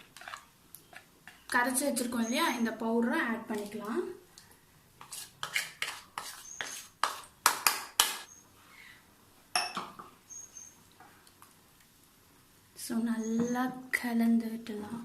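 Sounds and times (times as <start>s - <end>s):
spoon scraping metal pot: 0.0s - 1.5s, 5.0s - 7.2s.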